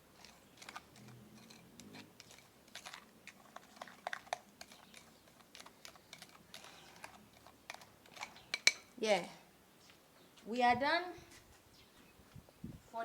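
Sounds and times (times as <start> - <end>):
utensil scraping container: 0.0 - 8.9.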